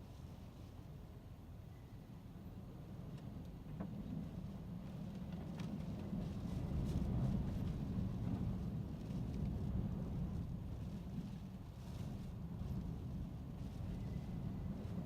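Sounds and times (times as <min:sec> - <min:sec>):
gusty storm wind: 0:02.6 - 0:15.0
faint rain ticks: 0:03.1 - 0:12.8.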